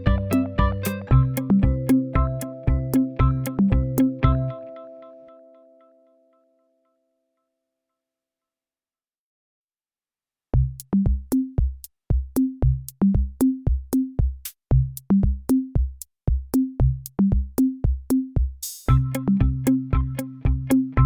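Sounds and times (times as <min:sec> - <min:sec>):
electronic drum-machine beat: 0:00.0 - 0:04.6, 0:10.6 - 0:21.0.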